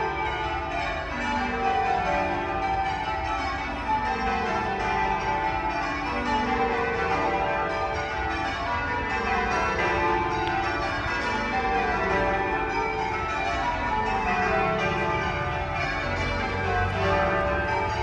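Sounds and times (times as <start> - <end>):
church bells change ringing: 0.0 - 18.0.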